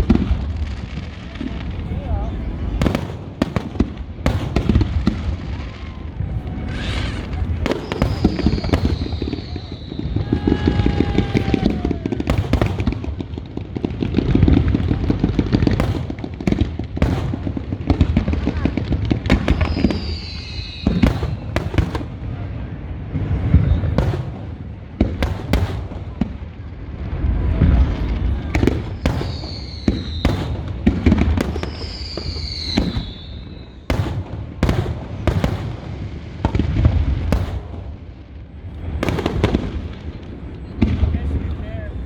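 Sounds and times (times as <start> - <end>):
fireworks booms and bangs: 0.0 - 42.0
falling whistles of shells: 6.6 - 10.6, 19.5 - 21.0, 29.0 - 30.4, 31.6 - 33.8.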